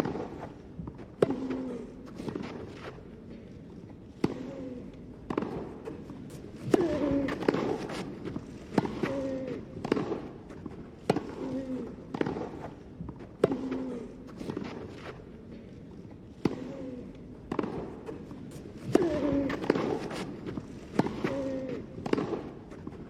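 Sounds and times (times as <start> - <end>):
tennis ball struck by rackets: 5.2 - 15.2, 17.5 - 23.0
player grunting: 18.9 - 19.7.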